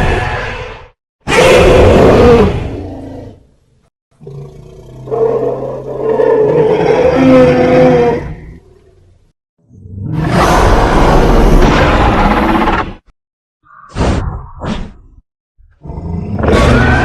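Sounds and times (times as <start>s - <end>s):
layered monster roar: 10.1s - 12.8s.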